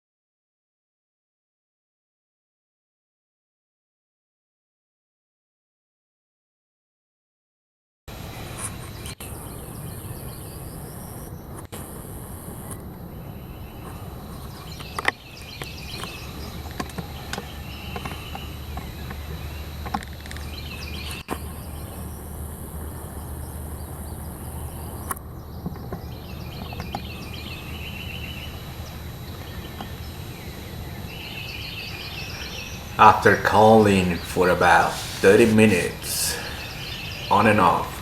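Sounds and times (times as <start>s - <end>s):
songbirds chirping and trilling: 8.1s - 38.0s.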